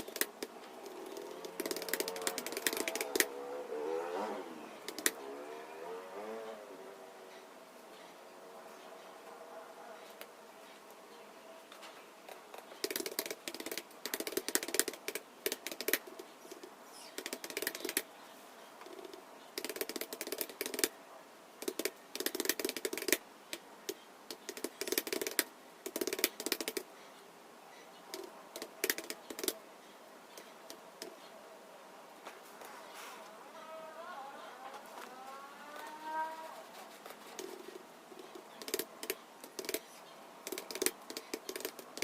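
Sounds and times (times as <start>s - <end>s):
keyboard typing clicks: 1.2s - 3.3s.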